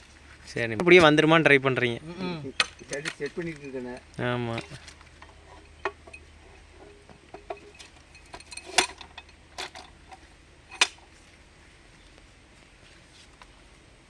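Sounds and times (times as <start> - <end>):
metallic clinks and knocks: 2.6 - 11.1.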